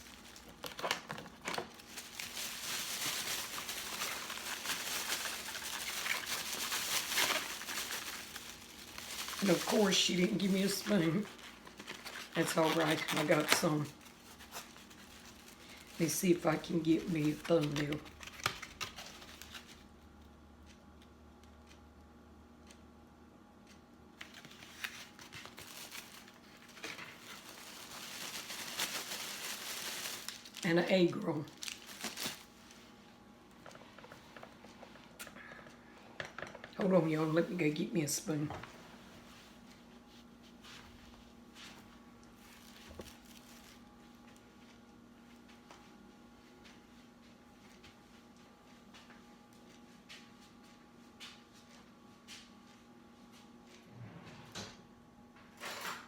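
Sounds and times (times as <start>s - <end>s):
plastic bag crinkling: 0.0s - 19.8s, 24.2s - 33.0s, 42.3s - 44.3s.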